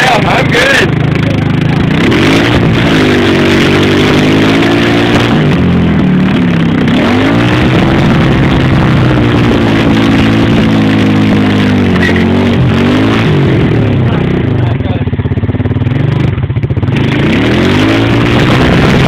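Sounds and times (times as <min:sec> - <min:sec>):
engine revving hard: 0:00.0 - 0:14.7, 0:16.9 - 0:19.0
loud rushing noise: 0:01.8 - 0:14.3, 0:17.0 - 0:19.0.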